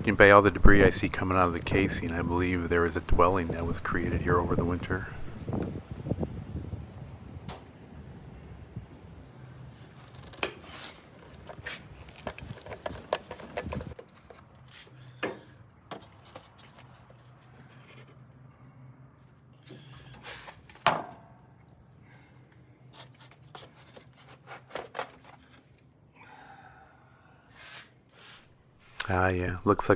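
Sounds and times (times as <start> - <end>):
hands scraping debris: 10.0 - 15.0.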